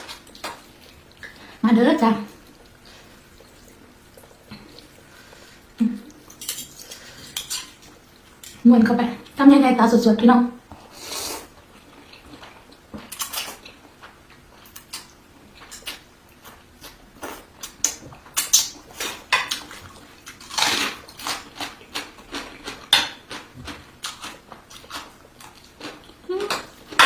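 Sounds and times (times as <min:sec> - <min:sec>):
mouth eating sounds: 0:25.6 - 0:26.8.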